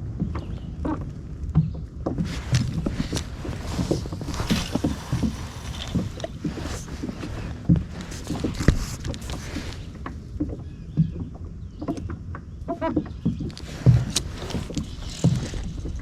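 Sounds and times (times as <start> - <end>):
knocks and thumps on kayak: 0.2 - 16.0.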